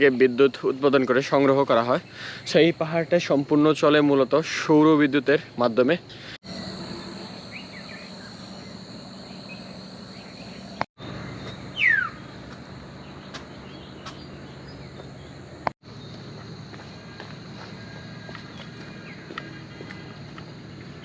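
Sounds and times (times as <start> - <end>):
insects trilling: 0.0 - 21.0
short bird chirps: 11.4 - 12.3
bird whistle: 11.6 - 12.3.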